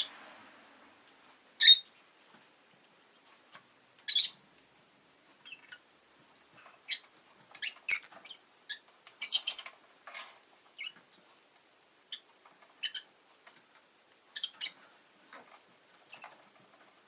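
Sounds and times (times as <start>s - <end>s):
lovebirds chirping: 1.6s - 2.0s, 4.0s - 4.4s, 5.4s - 5.9s, 6.8s - 9.8s, 10.7s - 11.0s, 12.1s - 13.1s, 14.3s - 14.8s.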